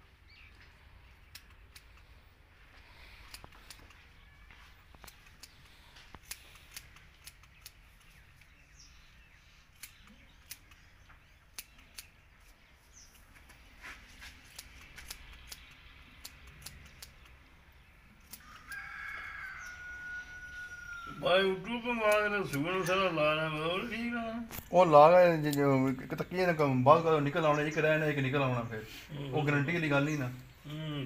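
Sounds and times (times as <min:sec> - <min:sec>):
faint clicks and snips: 0:01.2 - 0:02.1, 0:03.2 - 0:04.0, 0:04.8 - 0:08.6, 0:09.7 - 0:13.6, 0:14.3 - 0:17.4, 0:18.2 - 0:18.9
rooster crowing: 0:18.4 - 0:21.3.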